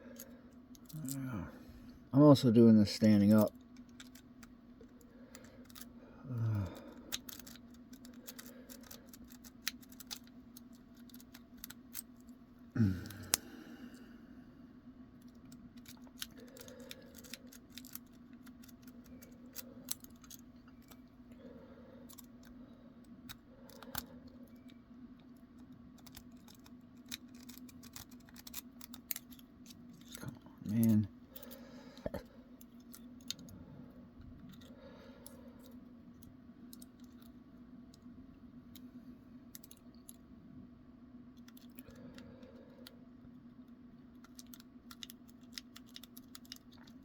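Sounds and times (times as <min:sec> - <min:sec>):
faint steady hum: 0:00.0 - 0:47.0
lock pick metal clicks and scrapes: 0:26.0 - 0:30.2.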